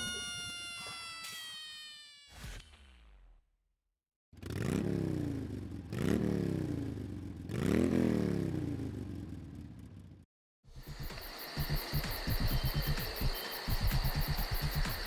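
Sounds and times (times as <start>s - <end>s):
engine revving: 4.4s - 9.9s.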